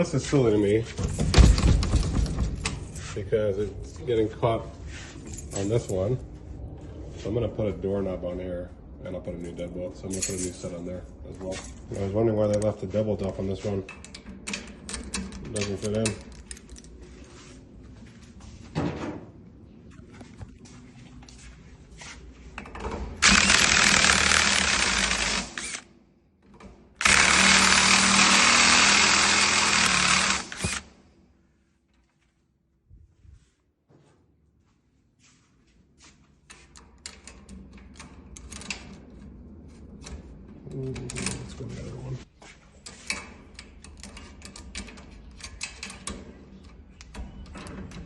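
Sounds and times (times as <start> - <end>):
power drill running: 23.2 - 25.9, 27.0 - 30.9.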